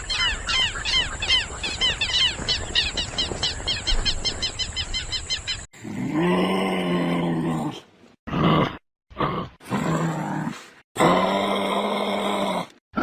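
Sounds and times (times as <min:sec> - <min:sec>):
small birds chirping: 0:00.0 - 0:05.7.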